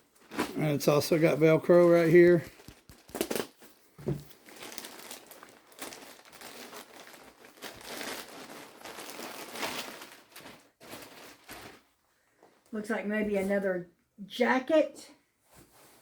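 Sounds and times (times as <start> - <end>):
packaging crinkling: 1.7 - 11.9.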